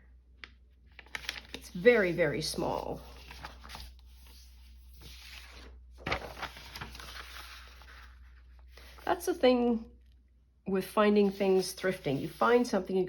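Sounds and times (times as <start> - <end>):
paper sheets rustling and sliding: 1.0 - 9.1, 11.2 - 12.9.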